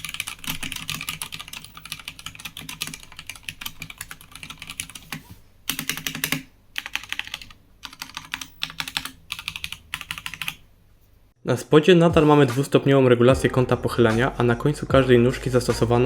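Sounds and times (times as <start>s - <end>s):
fast typing on mechanical keyboard: 0.0s - 10.6s.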